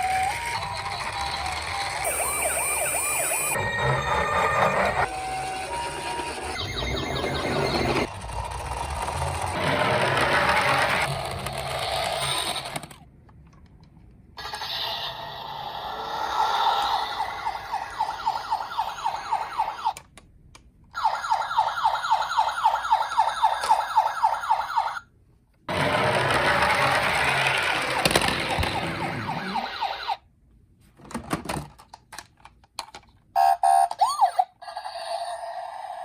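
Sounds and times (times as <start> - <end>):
noisy toy siren: 0.0 - 8.1, 14.4 - 20.0, 21.0 - 25.1, 27.8 - 30.3, 33.4 - 36.0
toy yelp siren: 0.0 - 8.1, 14.4 - 20.0, 21.0 - 25.0, 28.4 - 30.2, 33.4 - 36.0.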